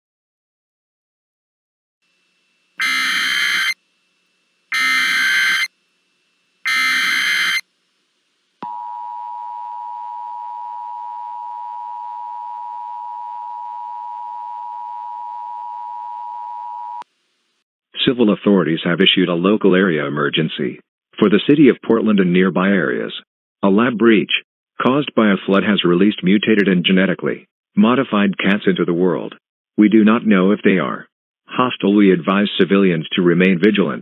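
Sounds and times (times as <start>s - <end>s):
digital data tone bursts: 2.8s - 3.8s, 4.7s - 5.7s, 6.6s - 7.6s
two-tone attention signal: 2.8s - 3.8s, 4.7s - 5.7s, 6.7s - 7.6s.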